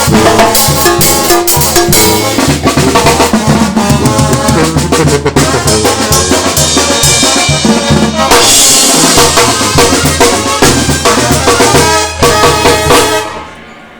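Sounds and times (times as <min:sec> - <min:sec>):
heavy bass line: 0:00.0 - 0:13.4
brass band playing: 0:00.0 - 0:13.9
cymbal ringing: 0:06.1 - 0:13.9.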